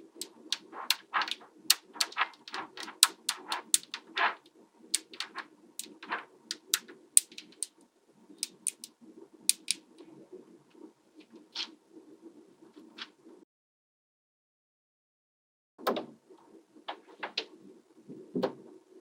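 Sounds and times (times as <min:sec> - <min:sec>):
balls rolling and scraping: 0:00.0 - 0:07.8
magnetic balls clicking: 0:00.0 - 0:07.8, 0:08.4 - 0:09.9.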